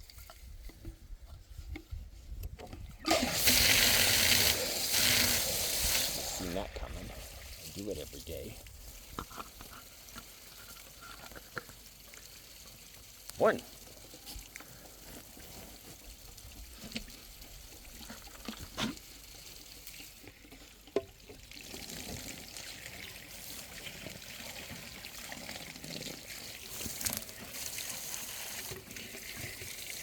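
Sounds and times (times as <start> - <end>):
water running and pouring: 3.0 - 10.9, 16.2 - 30.0.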